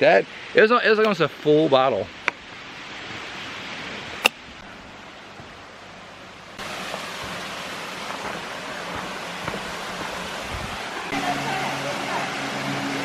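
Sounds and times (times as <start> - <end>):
waterfall rushing: 6.0 - 13.0.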